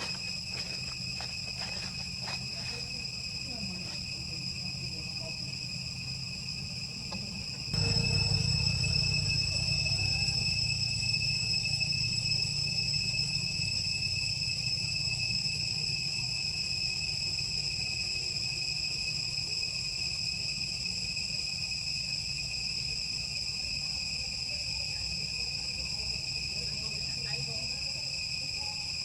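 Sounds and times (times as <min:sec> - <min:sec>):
high-pitched insect drone: 0:00.0 - 0:29.0
low rumble: 0:07.8 - 0:15.4.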